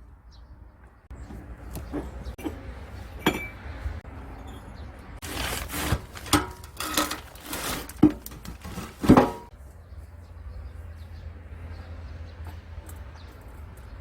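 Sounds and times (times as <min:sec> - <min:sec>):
metal tools clanking: 0:01.2 - 0:09.5.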